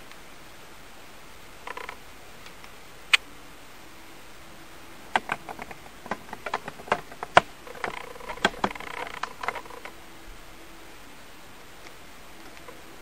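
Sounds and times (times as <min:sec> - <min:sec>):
faint buzzy crackle: 0:00.0 - 0:13.0
irregular clicks and taps: 0:05.1 - 0:10.0.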